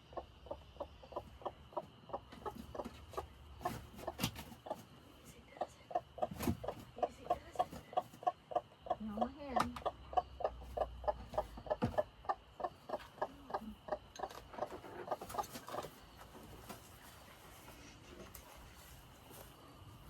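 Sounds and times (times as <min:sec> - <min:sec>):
hen clucking: 0:00.0 - 0:19.1.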